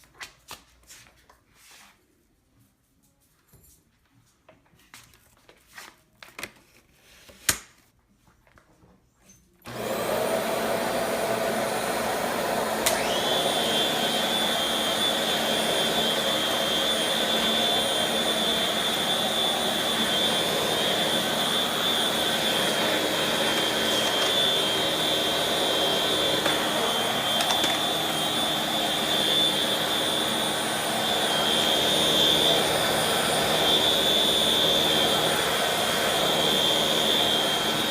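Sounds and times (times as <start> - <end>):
upright vacuum running: 9.6 - 37.9.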